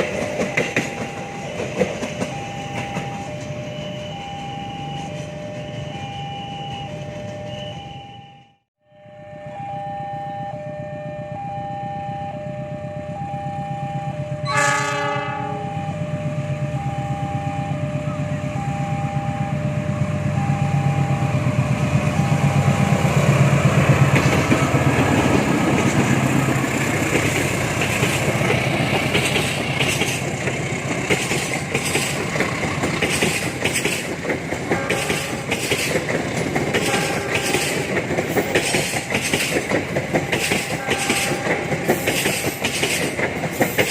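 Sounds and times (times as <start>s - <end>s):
train engine rumble: 0.0s - 8.4s, 9.2s - 43.9s
pulsing warning tone: 0.4s - 23.2s
train horn blast: 14.4s - 16.6s, 34.7s - 35.6s, 36.8s - 37.7s, 40.8s - 41.7s
wheels clattering over rail joints: 23.6s - 43.9s.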